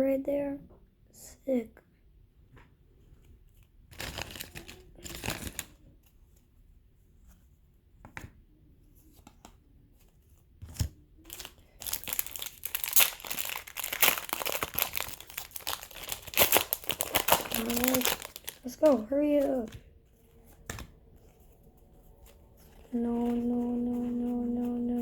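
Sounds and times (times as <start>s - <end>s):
foil wrapper tearing: 4.0s - 5.7s, 11.3s - 19.7s
foil crackling: 11.3s - 25.0s.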